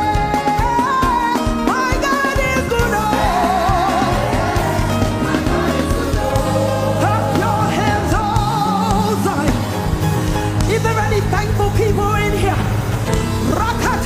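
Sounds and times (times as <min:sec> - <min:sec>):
person singing with vibrato: 0:00.0 - 0:09.8
band with bass and keyboard: 0:00.0 - 0:14.0.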